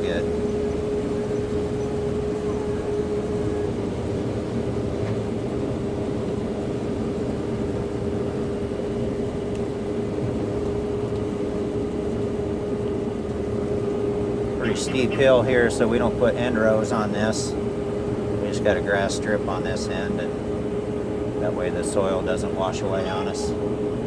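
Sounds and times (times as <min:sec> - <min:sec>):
combine harvester running: 0:10.9 - 0:24.0.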